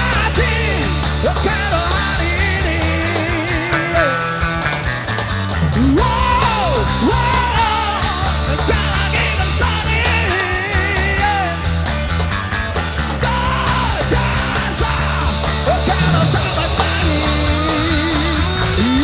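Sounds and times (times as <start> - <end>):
bending lead melody: 0.0 - 19.0
rock band playing live: 0.0 - 19.0.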